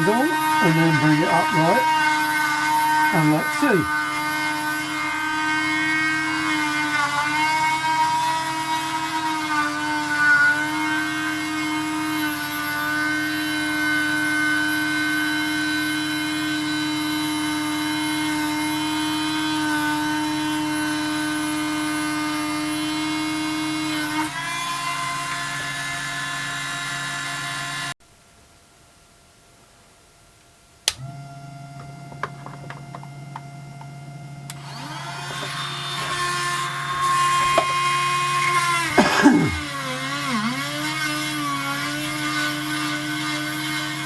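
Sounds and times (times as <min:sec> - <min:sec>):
rotary tool grinding stone: 0:00.0 - 0:16.2, 0:34.6 - 0:44.0.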